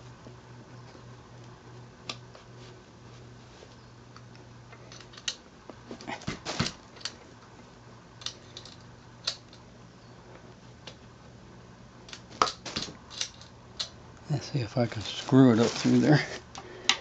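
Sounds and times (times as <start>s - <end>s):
faint steady hum: 0.0s - 17.0s
metal bike parts clicking: 4.2s - 5.5s, 8.2s - 9.6s, 12.1s - 14.0s.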